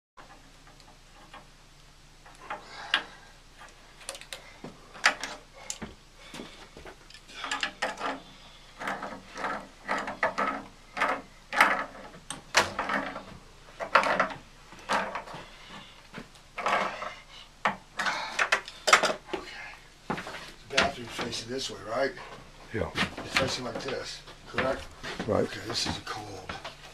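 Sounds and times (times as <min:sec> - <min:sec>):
tools and plumbing parts clattering: 0:02.2 - 0:19.4, 0:20.1 - 0:21.4.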